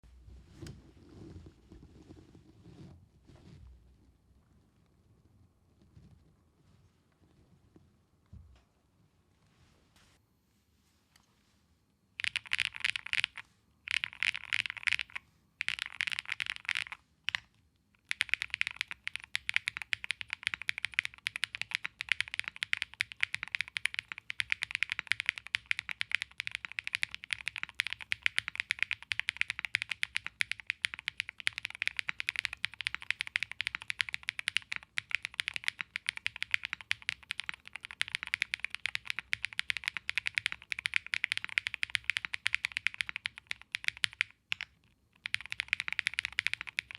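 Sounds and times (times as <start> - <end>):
fast mechanical keyboard typing: 12.2 - 46.9.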